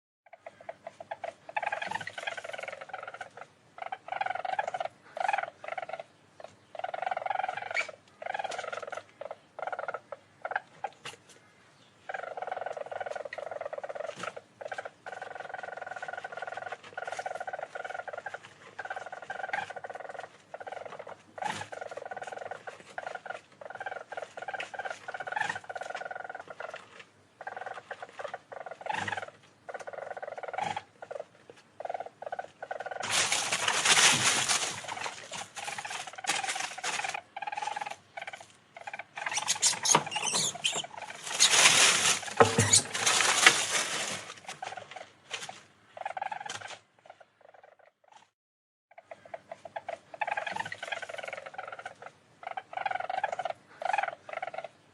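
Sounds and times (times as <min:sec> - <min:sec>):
animal chopped trill: 0:32.7 - 0:46.8
animal harsh screeching: 0:39.2 - 0:41.8.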